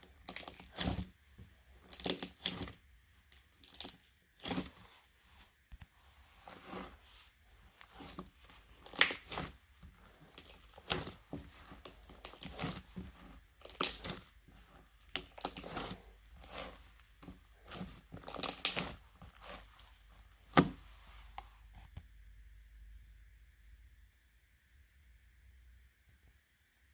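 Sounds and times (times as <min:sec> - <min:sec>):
slime crackling and popping: 0:00.0 - 0:04.8, 0:07.8 - 0:20.8.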